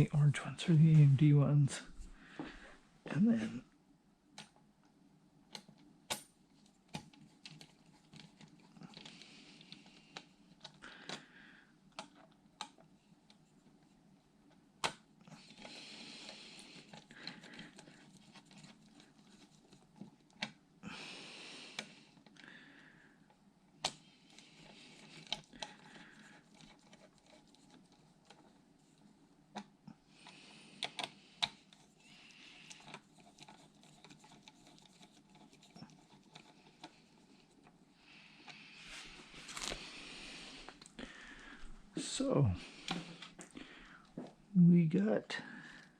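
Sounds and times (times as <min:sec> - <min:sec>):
rustling and scraping: 0:24.2 - 0:42.0.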